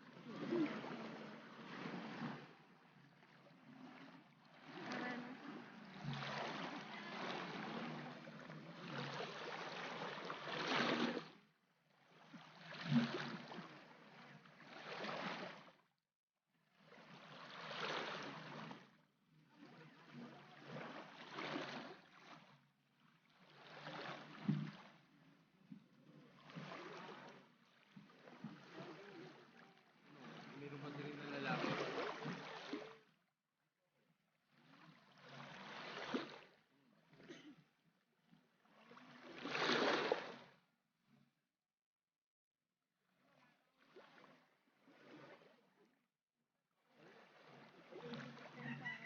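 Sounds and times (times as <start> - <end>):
small waves washing onto sand: 0.0 - 4.0, 4.6 - 11.4, 28.2 - 33.0.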